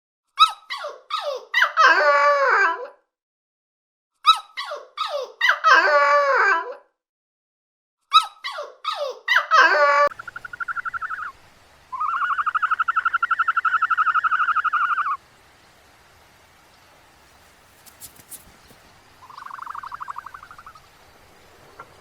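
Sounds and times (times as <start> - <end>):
animal squeaky yelps: 0.4 - 3.0, 4.2 - 6.9, 8.1 - 11.3, 11.9 - 15.2, 19.2 - 20.8
animal pulsed trills: 10.1 - 15.2, 17.4 - 22.0.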